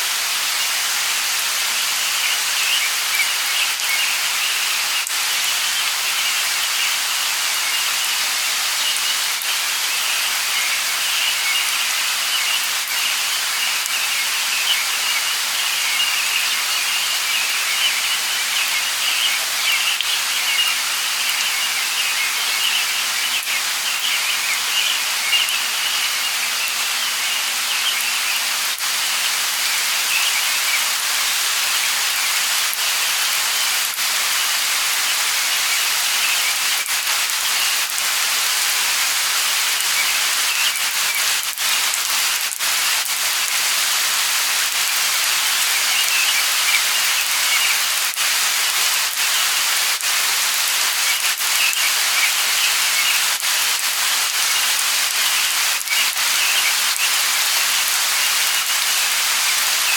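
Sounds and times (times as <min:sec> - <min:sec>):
light rain falling: 0:00.0 - 0:59.9
raindrops ticking: 0:00.7 - 0:59.9
faint bird chirps: 0:01.8 - 0:31.0, 0:39.5 - 0:41.9, 0:45.5 - 0:48.0, 0:50.9 - 0:53.4, 0:54.3 - 0:59.9.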